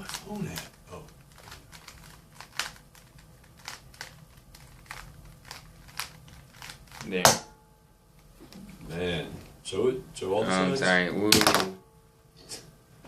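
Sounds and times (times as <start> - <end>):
puzzle cube clicking: 0.0 - 7.1.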